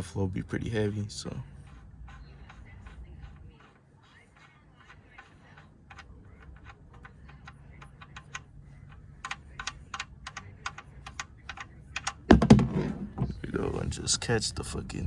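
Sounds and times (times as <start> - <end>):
drain plug clicking: 5.9 - 13.3.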